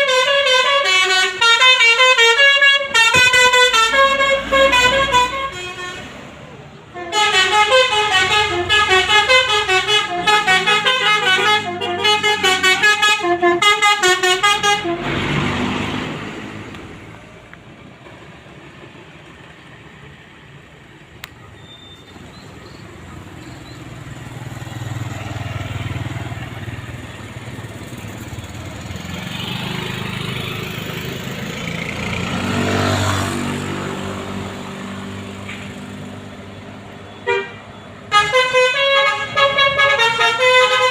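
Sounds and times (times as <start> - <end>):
multi-tone bus horn melody: 0.0 - 6.3, 6.9 - 15.6, 37.1 - 40.9
vehicle engines: 0.0 - 40.9.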